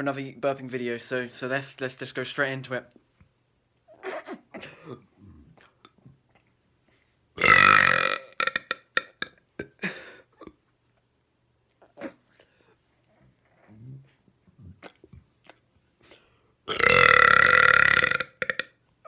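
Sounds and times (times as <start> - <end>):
quiet throat sounds: 3.9 - 10.7, 11.8 - 18.8
loud long burp: 7.4 - 9.4, 16.7 - 18.8.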